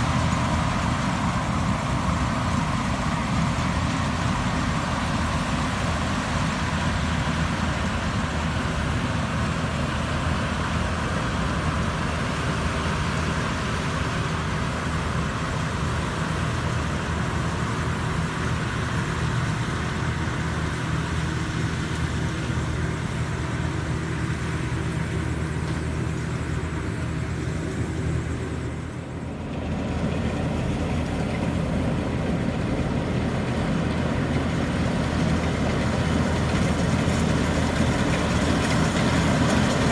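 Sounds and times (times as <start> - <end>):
combine harvester engine running: 0.0 - 39.9.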